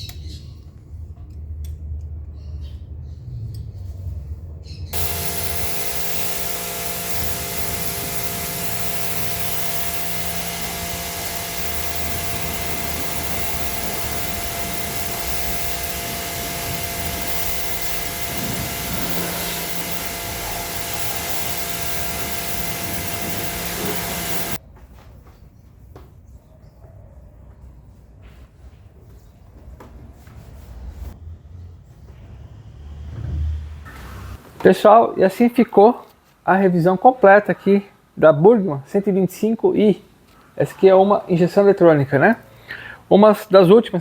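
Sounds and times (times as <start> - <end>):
machine hiss with whining tones: 5.0 - 24.6.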